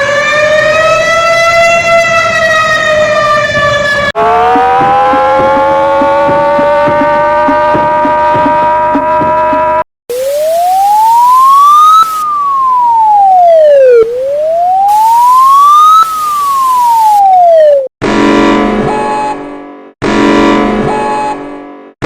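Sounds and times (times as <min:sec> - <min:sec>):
electronic wailing siren tone: 0:00.0 - 0:17.9
steady hiss: 0:10.1 - 0:12.6, 0:14.1 - 0:17.2.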